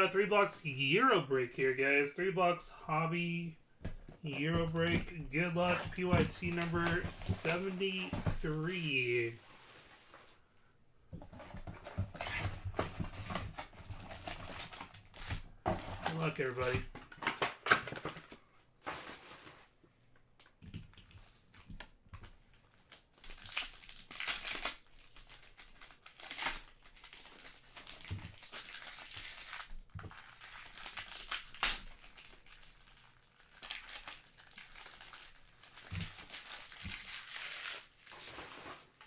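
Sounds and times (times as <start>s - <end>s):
plastic wrapping crinkling and tearing: 4.3s - 10.2s, 11.6s - 18.3s, 20.9s - 39.0s.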